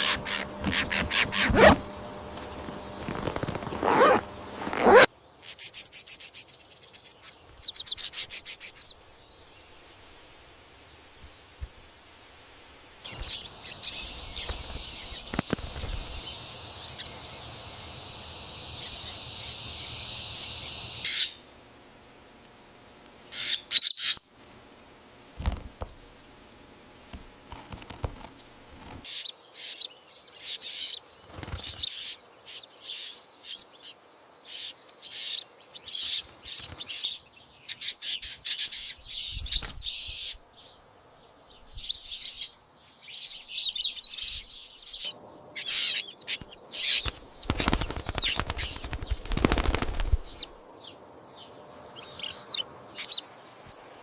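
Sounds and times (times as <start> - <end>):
young bird chirping: 0.0 - 3.1, 5.4 - 9.0, 13.1 - 17.5, 18.5 - 21.4, 23.3 - 24.4, 31.6 - 40.4, 41.6 - 49.2, 49.9 - 50.5, 52.0 - 53.2
steady high hiss: 0.0 - 54.0.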